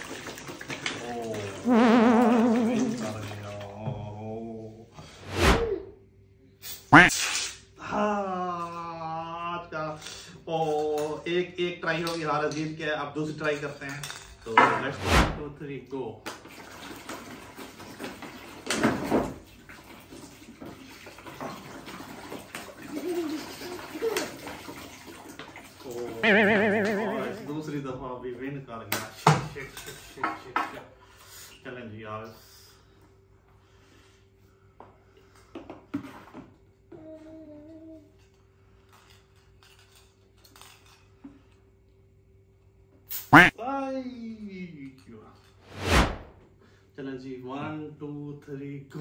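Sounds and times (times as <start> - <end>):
water splashing into a tub: 0.0 - 3.7, 16.3 - 26.2
person humming: 1.7 - 3.0.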